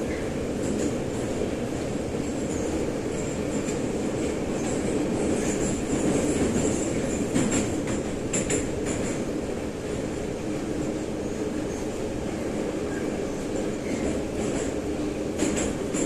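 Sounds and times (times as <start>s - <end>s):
train rumble: 0.0s - 16.0s
wheels clacking over rail joints: 2.2s - 9.4s, 13.7s - 16.0s.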